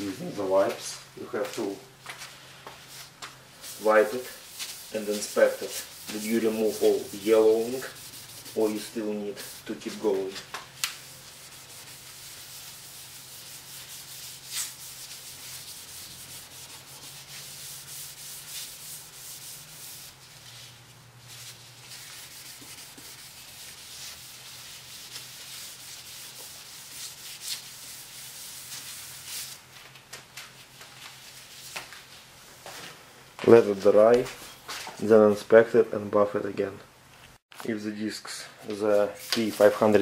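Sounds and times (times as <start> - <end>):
sanding disc rubbing on plastic: 3.7 - 20.2.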